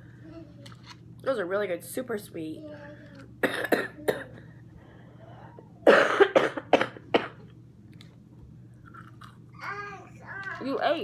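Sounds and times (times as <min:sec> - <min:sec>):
woman coughing: 0:03.4 - 0:04.3, 0:05.8 - 0:07.4.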